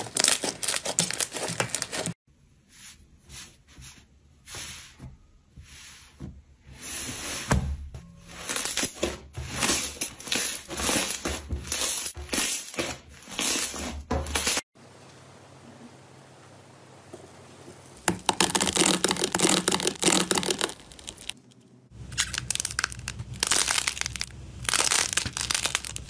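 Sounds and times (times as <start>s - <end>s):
slime squishing by hand: 18.0s - 26.0s.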